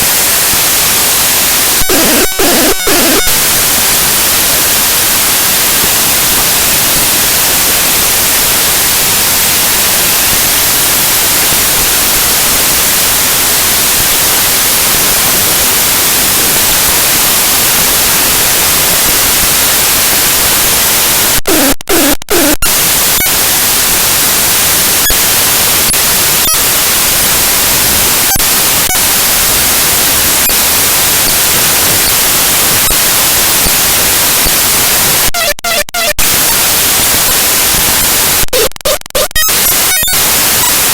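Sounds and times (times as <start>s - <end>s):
loud dense static: 0.0s - 40.9s
short buzzy tones: 1.8s - 3.4s, 21.4s - 23.4s, 35.3s - 36.2s.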